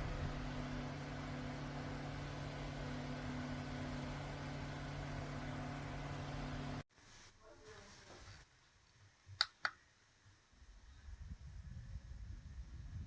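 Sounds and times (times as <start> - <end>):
desk fan running: 0.0 - 6.8.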